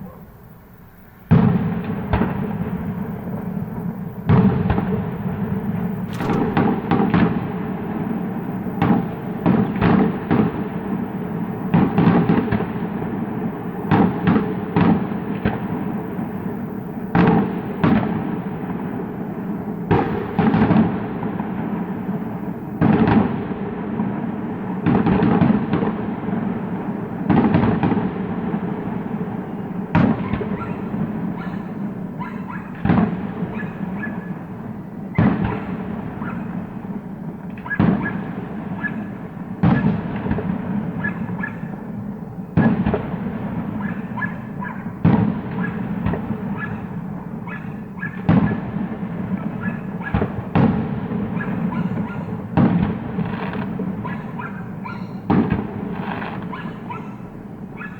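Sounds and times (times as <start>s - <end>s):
continuous rumble: 0.0s - 9.4s
firework bursts booming: 0.0s - 57.8s.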